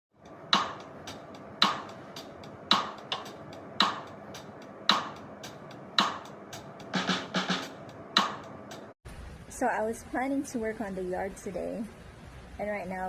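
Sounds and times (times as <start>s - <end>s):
clap-like beat in music: 0.5s - 8.9s.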